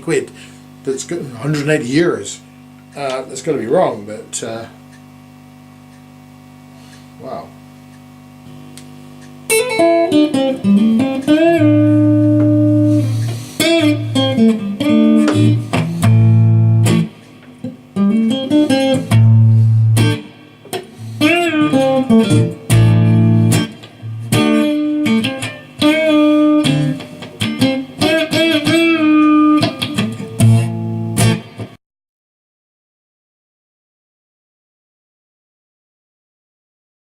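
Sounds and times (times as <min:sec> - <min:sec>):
electric guitar lead with bends: 0:09.5 - 0:31.8.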